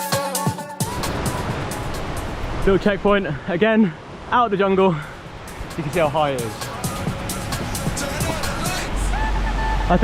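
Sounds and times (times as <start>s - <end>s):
song with drum beat and singing: 0.0s - 1.7s, 6.5s - 9.1s
steady rushing noise: 0.9s - 10.0s.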